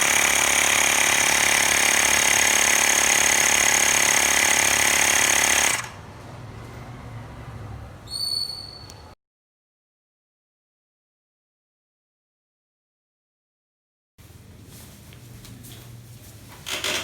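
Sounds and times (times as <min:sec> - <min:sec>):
air compressor buzzing: 0:00.0 - 0:06.2.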